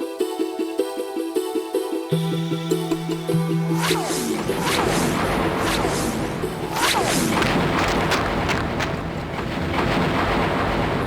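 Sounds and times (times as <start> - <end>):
steady rumbling noise: 3.6 - 11.0
quick falling whooshes: 3.7 - 11.0.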